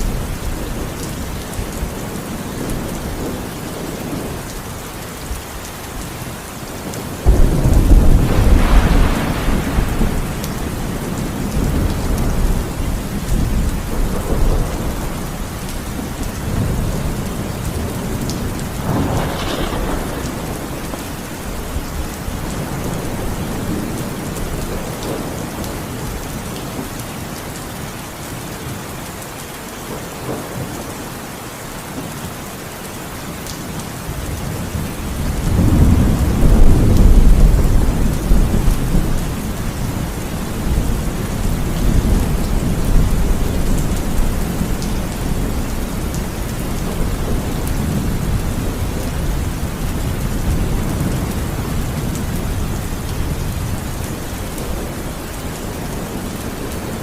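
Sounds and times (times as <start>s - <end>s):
heavy rain: 0.0s - 57.0s
thunder rumbling: 6.8s - 26.2s, 34.3s - 57.0s.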